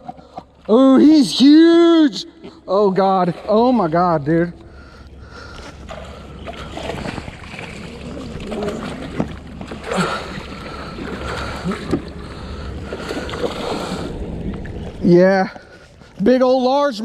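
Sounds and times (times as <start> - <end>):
water sloshing: 0.0 - 17.0
fish splashing in water: 5.4 - 15.0.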